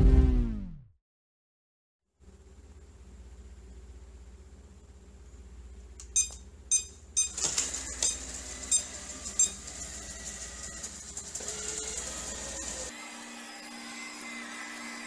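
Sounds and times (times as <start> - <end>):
short high electronic beeps: 6.2 - 7.4
robot vacuum motors running: 7.3 - 13.0.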